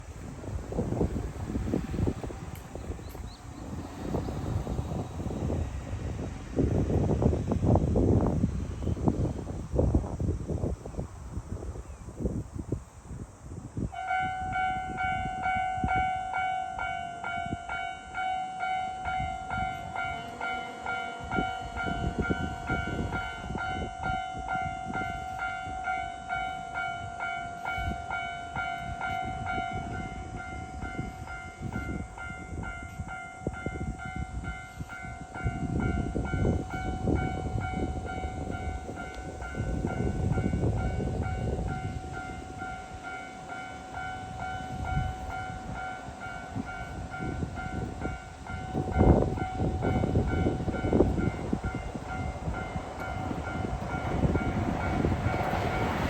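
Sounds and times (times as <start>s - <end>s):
level crossing warning bell: 14.0s - 56.0s.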